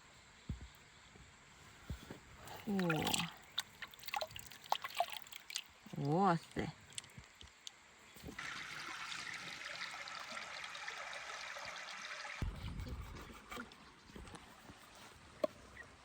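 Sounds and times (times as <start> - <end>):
water trickling: 2.5 - 12.4.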